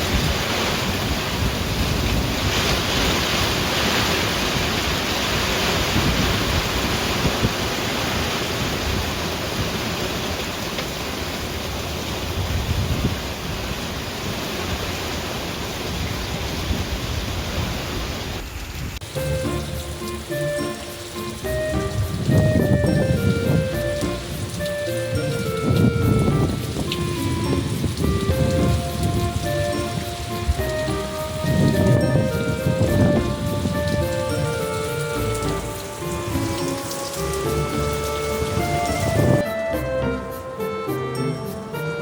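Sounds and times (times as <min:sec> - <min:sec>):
wind buffeting microphone: 0:00.0 - 0:10.5, 0:11.4 - 0:39.5
heavy rain pouring: 0:00.0 - 0:42.0.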